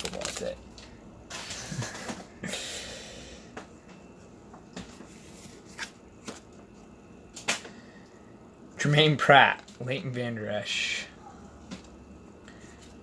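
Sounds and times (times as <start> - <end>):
trading cards rustling: 0.0 - 0.6.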